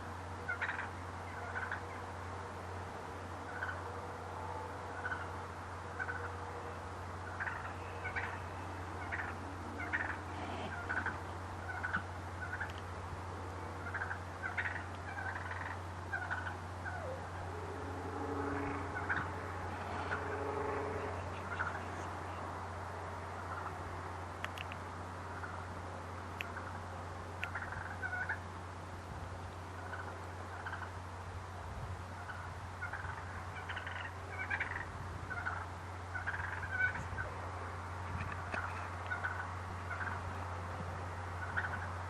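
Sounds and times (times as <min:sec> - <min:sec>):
turkey calling: 0:00.4 - 0:02.1, 0:03.4 - 0:04.0, 0:04.9 - 0:12.8, 0:13.8 - 0:17.6, 0:18.2 - 0:22.4, 0:23.4 - 0:23.8, 0:25.4 - 0:25.7, 0:26.4 - 0:26.8, 0:27.4 - 0:28.4, 0:29.8 - 0:30.9, 0:32.2 - 0:37.4, 0:38.4 - 0:40.4, 0:41.4 - 0:42.0.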